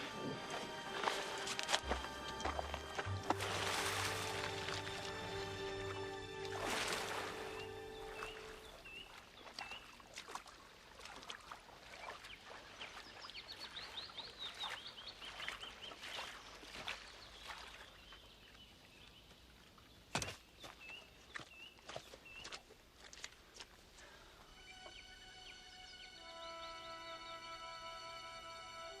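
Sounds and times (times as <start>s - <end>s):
footsteps: 0.0s - 8.6s
music: 0.0s - 8.6s, 24.4s - 29.0s
birds chirping: 0.0s - 10.0s, 12.0s - 22.6s, 24.0s - 29.0s
bird trill: 7.4s - 9.1s.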